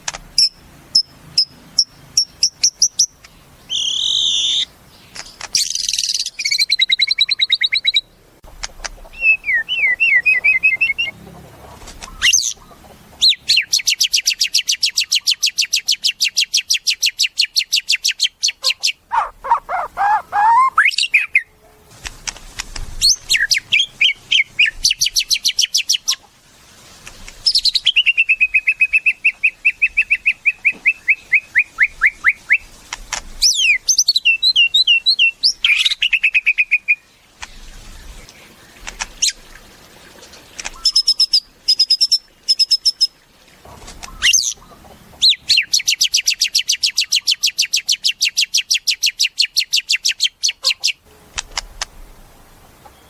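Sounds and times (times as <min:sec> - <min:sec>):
bird singing varied song: 0:00.4 - 0:08.3, 0:09.1 - 0:11.2, 0:12.0 - 0:21.6, 0:23.0 - 0:26.2, 0:27.4 - 0:32.7, 0:33.4 - 0:39.5, 0:44.0 - 0:51.0.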